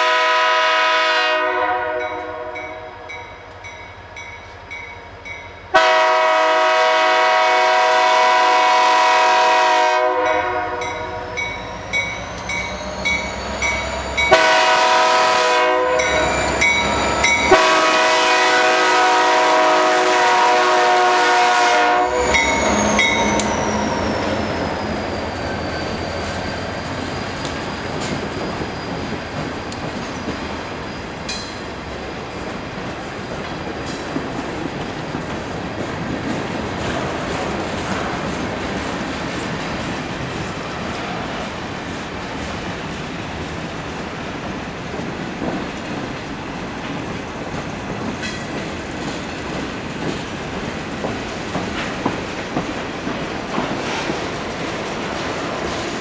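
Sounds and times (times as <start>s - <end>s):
locomotive air horn blowing: 0.0s - 3.1s, 5.7s - 11.4s, 14.2s - 24.1s
train rumbling past: 0.0s - 56.0s
thin high squeal: 11.6s - 14.3s, 22.2s - 29.2s
wheels clicking over rail joints: 26.2s - 56.0s.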